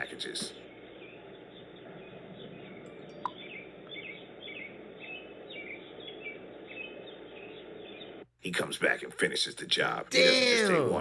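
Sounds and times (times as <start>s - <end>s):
outdoor background noise: 0.0s - 8.4s.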